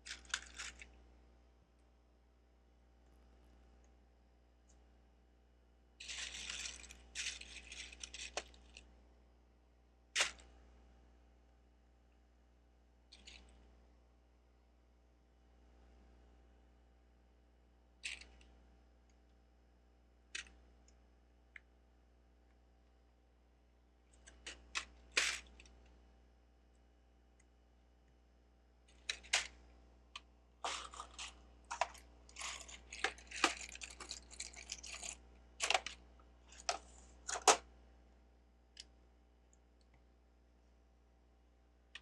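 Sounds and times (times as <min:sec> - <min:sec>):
plastic bricks clicking and rattling: 0:30.6 - 0:37.6.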